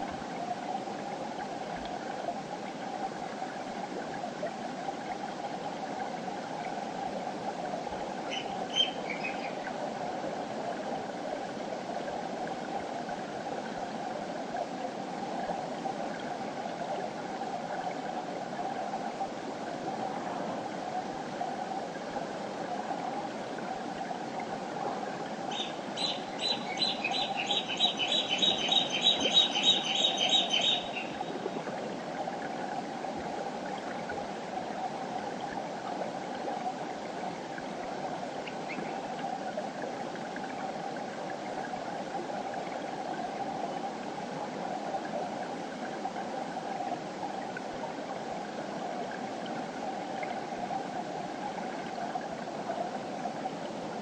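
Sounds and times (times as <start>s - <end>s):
river water flowing: 0.0s - 54.0s
bird chirping: 8.3s - 9.6s, 25.5s - 31.2s
bird calling high repeated notes: 25.5s - 31.2s.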